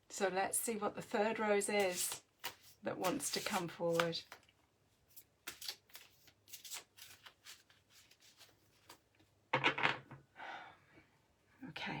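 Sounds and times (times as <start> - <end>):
cards being shuffled: 1.8 - 4.5, 5.1 - 9.0.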